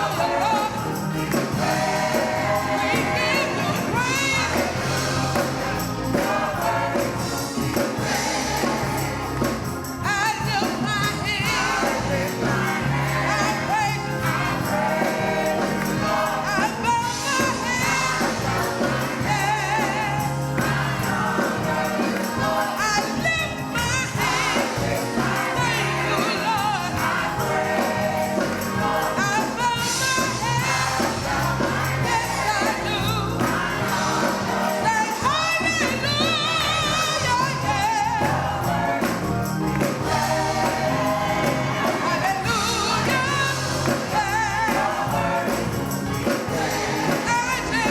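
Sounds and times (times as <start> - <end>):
gospel choir singing: 0.0 - 47.9
steady bass line: 0.0 - 47.9.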